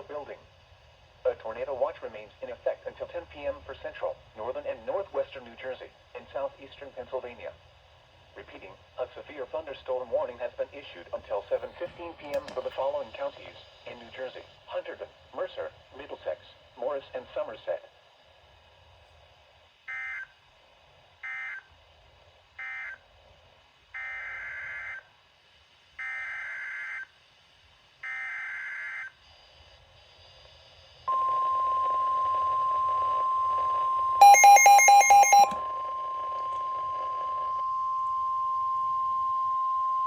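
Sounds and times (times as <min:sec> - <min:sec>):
steady warning alarm tone: 0:31.0 - 0:40.0
data tone bursts: 0:34.2 - 0:35.6
rapid electronic beeps: 0:34.2 - 0:35.6.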